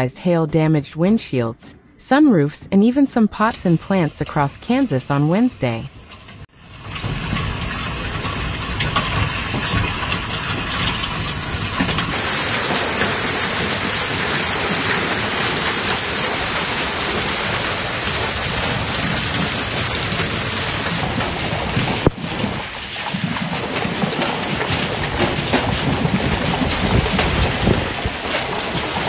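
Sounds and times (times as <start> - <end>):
heavy rain: 6.5 - 29.0.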